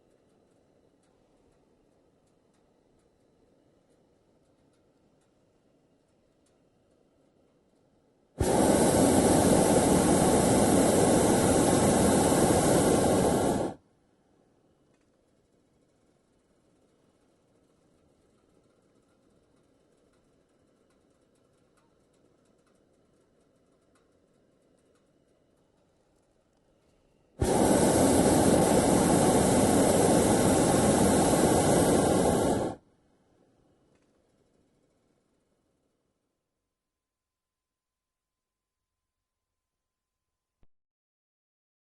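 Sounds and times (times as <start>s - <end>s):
propane burner blast: 8.4s - 13.8s, 27.4s - 32.8s
rushing hiss of escaping air: 8.4s - 13.8s, 27.4s - 32.8s.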